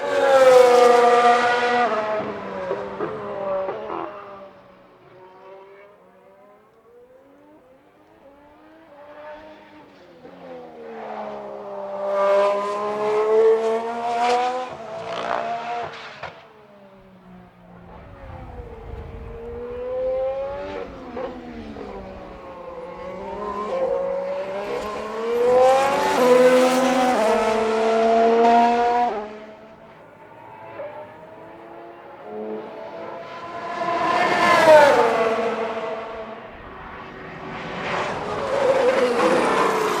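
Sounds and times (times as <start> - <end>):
racing car engines accelerating: 0.0 - 40.0.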